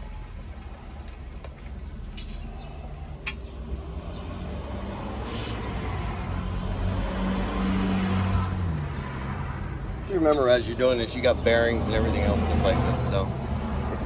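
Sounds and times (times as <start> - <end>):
vehicle engine hum approaching: 0.0 - 14.0
sharp clicks: 3.2 - 3.5.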